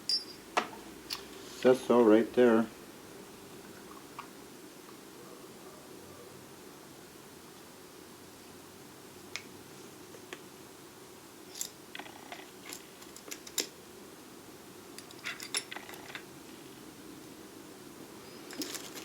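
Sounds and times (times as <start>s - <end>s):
metal tools clinking: 0.0s - 0.5s, 15.0s - 16.2s
faint steady hum: 0.0s - 19.0s.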